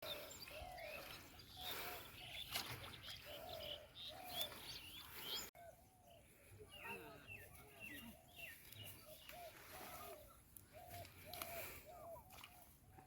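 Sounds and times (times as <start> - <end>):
low cooing bird: 0.1 - 6.1, 7.8 - 12.5.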